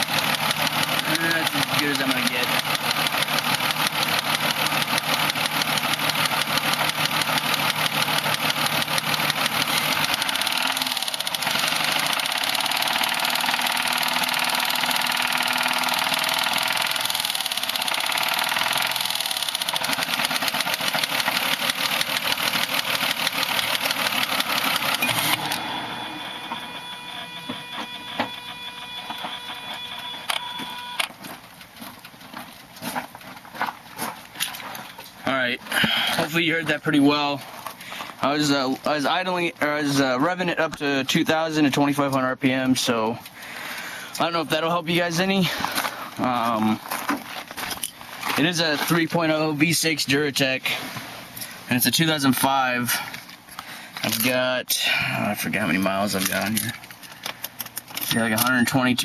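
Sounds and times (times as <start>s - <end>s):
car engine revving with ticking: 0.0s - 27.4s
sharp clicks: 0.6s - 25.6s.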